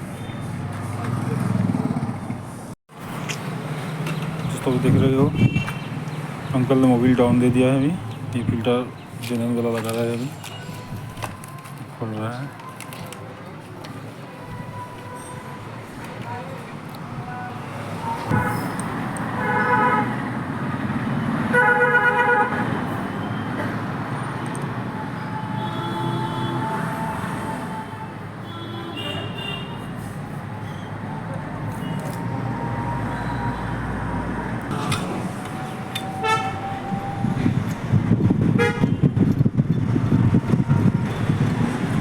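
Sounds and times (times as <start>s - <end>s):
road traffic: 0.0s - 42.0s
vehicle horns honking: 18.0s - 20.2s, 21.5s - 23.6s, 28.4s - 29.9s, 36.0s - 37.0s, 38.4s - 39.4s
vehicle engine rumbling: 29.9s - 42.0s.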